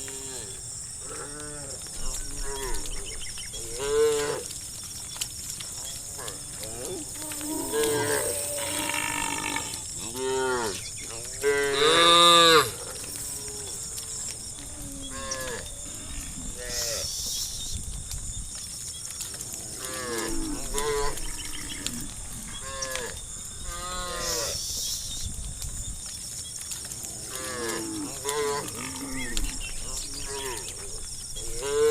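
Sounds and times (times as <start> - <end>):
cattle mooing: 6.2 - 10.8.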